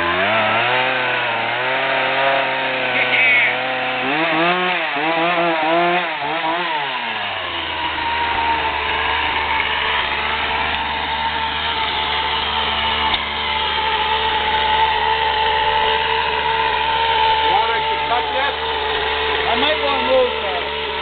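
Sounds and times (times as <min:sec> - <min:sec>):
chainsaw revving: 0:00.0 - 0:21.0.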